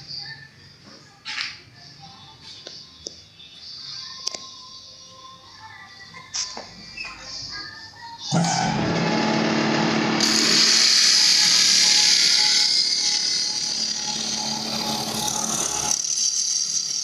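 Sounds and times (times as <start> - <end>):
machine low hum: 8.3 - 16.0
loud high hiss: 8.9 - 16.9.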